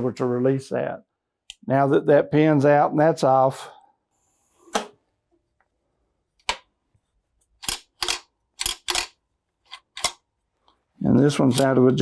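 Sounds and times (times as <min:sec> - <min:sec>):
metal clicks and clacks: 0:07.6 - 0:10.2, 0:11.4 - 0:11.8.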